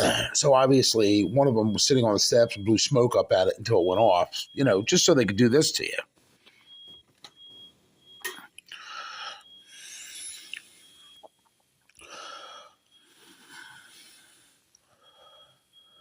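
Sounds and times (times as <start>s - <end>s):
person breathing heavily: 8.7s - 10.6s, 12.0s - 15.7s.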